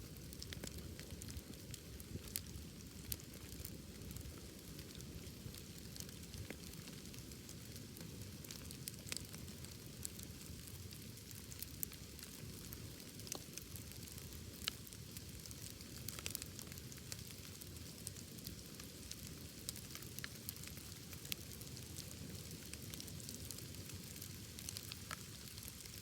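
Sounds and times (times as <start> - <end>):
burning wood crackling and popping: 0.0 - 26.0
low rumble of flames: 0.0 - 26.0.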